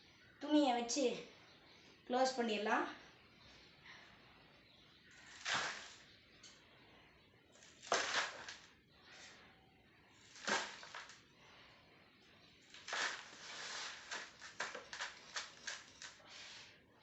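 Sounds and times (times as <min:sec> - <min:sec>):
dry sand scraping: 0:05.3 - 0:06.0, 0:12.8 - 0:15.9.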